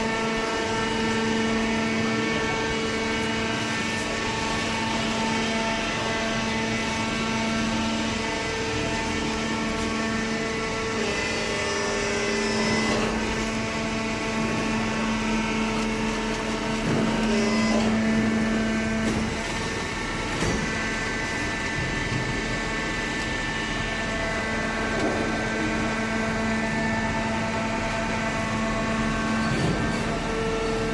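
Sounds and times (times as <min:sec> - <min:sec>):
baling machine humming: 0:00.0 - 0:30.9.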